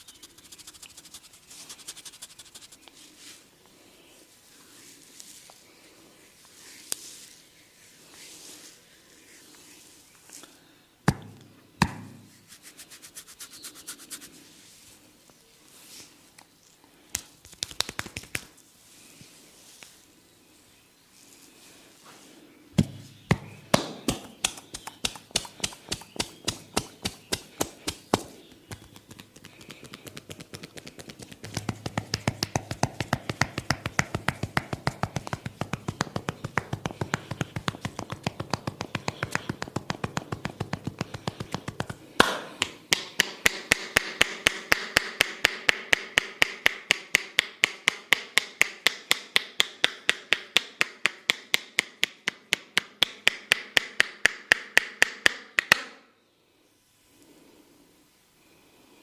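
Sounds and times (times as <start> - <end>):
hands tapping and slapping head: 11.1 - 12.3, 17.1 - 18.6, 22.8 - 56.0.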